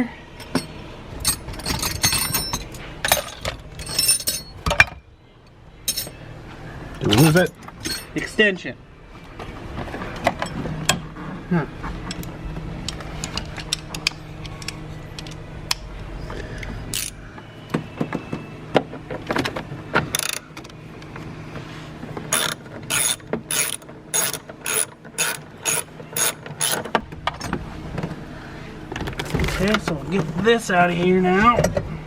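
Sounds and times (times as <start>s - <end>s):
ratchet wrench clicking: 16.9s - 17.2s, 22.3s - 26.9s.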